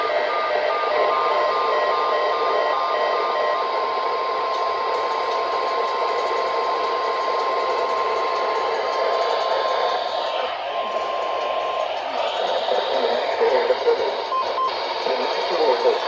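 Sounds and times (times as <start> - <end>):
steady warning alarm tone: 0.0 - 16.0
radio static: 7.5 - 16.0.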